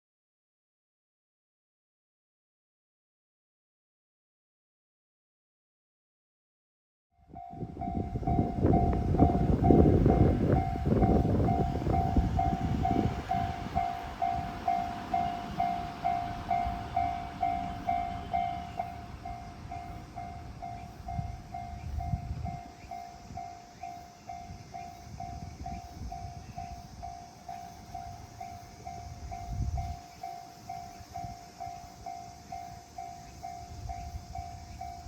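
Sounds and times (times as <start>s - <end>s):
level crossing alarm ringing: 7.3s - 35.0s
train wheels rumbling: 7.4s - 35.0s.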